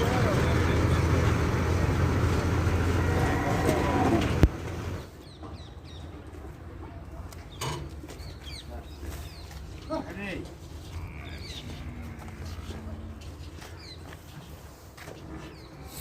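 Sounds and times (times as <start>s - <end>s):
diesel engine running: 0.0s - 5.1s
birds chirping: 4.2s - 6.7s, 7.4s - 10.2s, 10.9s - 14.5s.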